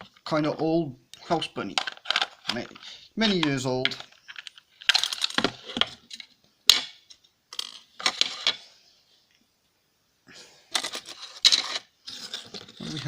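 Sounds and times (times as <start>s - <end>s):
plastic parts clicking and rattling: 1.7s - 8.6s, 10.7s - 13.0s.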